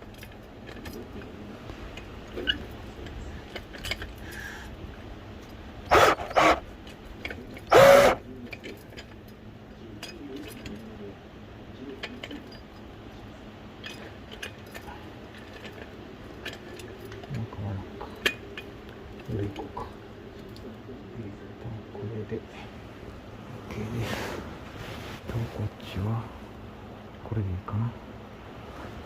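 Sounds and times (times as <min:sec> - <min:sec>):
metal jacking gear clinking: 0:00.0 - 0:04.6, 0:05.4 - 0:09.4, 0:10.0 - 0:10.9, 0:12.0 - 0:12.9, 0:13.8 - 0:17.5.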